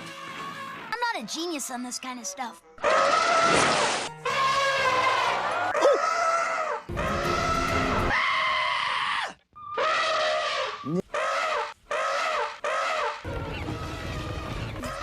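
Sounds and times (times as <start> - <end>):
elephant trumpeting: 2.8 - 8.7, 9.7 - 15.0.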